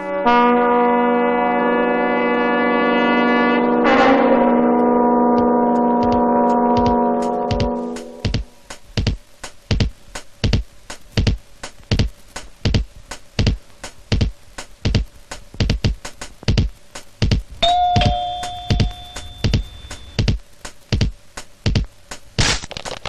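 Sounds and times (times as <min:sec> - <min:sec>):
bass-heavy percussive beat: 0:05.8 - 0:22.2
bell-like synth note: 0:17.6 - 0:20.2.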